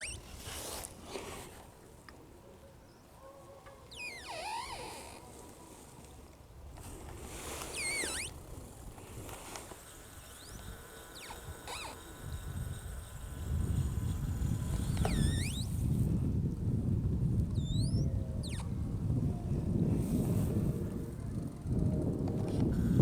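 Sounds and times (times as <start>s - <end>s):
sea ice grinding and creaking: 6.8s - 16.1s.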